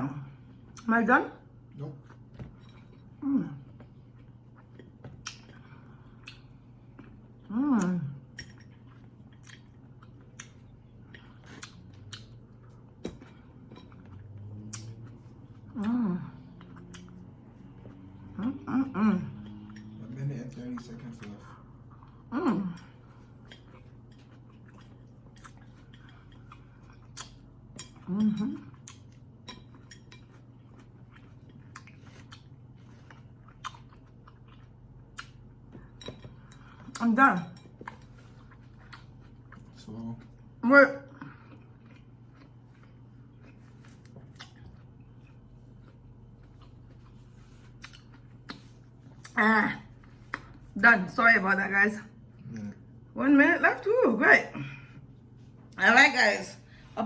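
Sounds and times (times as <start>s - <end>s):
steady low hum: 0.0s - 57.0s
person chewing food: 1.6s - 37.0s, 37.6s - 50.8s
wet mouth clicks and squishing: 14.1s - 15.2s, 24.4s - 28.0s, 47.7s - 49.4s.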